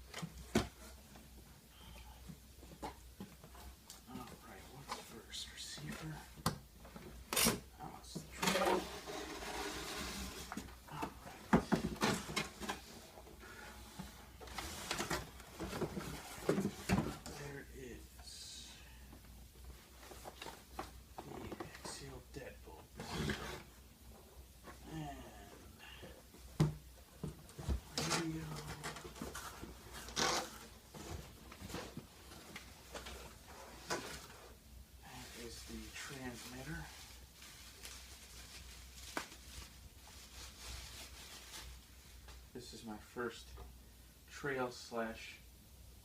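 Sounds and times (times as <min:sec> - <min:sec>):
packaging rustling and scraping: 0:08.2 - 0:17.4, 0:27.5 - 0:34.6, 0:35.2 - 0:41.9.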